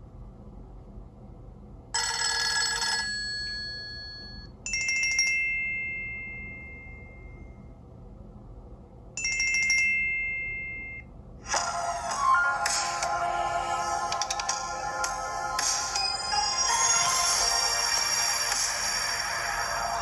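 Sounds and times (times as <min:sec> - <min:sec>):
busy ringtone: 0:02.0 - 0:07.5, 0:09.2 - 0:11.1, 0:15.6 - 0:20.0
bell-like ringtone chime: 0:02.3 - 0:07.5, 0:09.2 - 0:11.0.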